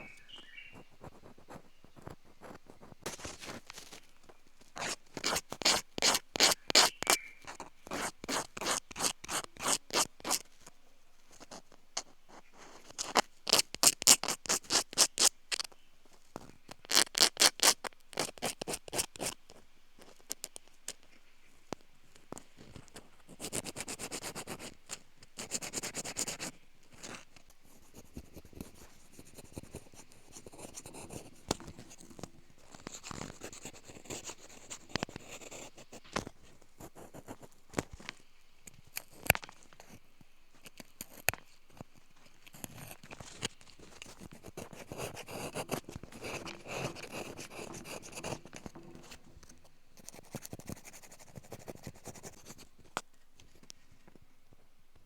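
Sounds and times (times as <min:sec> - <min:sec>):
light scratching and scraping: 0:00.0 - 0:54.2.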